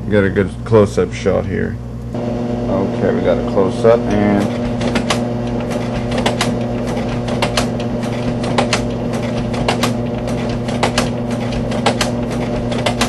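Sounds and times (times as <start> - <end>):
projector motor humming: 0.0 - 13.0
slide projector mechanism clicking: 4.5 - 13.0.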